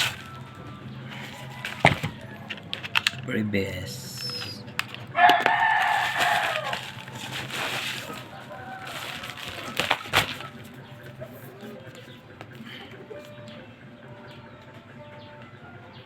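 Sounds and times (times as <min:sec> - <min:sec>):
rooster crowing: 0:01.0 - 0:02.8, 0:05.1 - 0:10.5.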